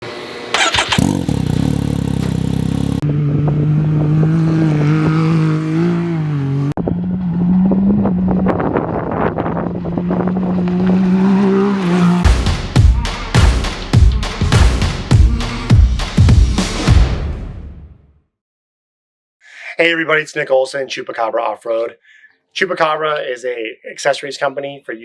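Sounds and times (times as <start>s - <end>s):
off-road vehicle engine running: 0.5s - 17.6s
music with heavy beats: 12.2s - 17.9s.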